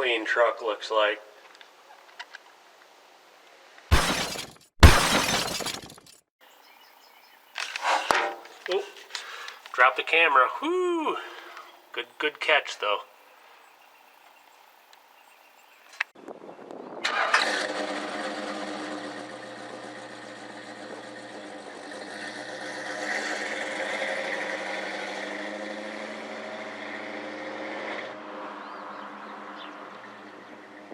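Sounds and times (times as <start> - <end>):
truck engine starting and running: 17.0 - 28.8.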